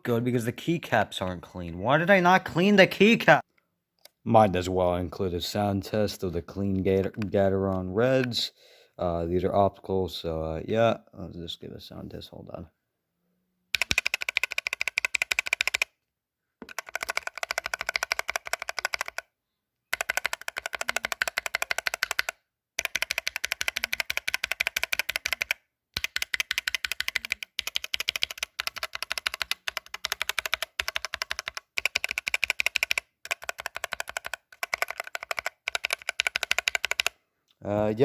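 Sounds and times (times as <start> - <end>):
mechanical keyboard keys clacking: 13.8 - 15.9, 16.6 - 19.2, 19.9 - 37.1.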